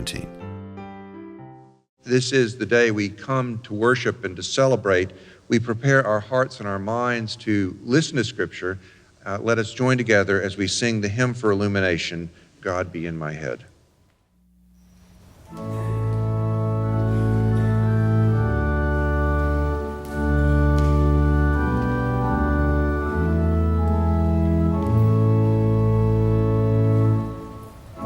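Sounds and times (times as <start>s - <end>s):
church organ playing a hymn: 0.0s - 0.9s, 14.8s - 28.0s.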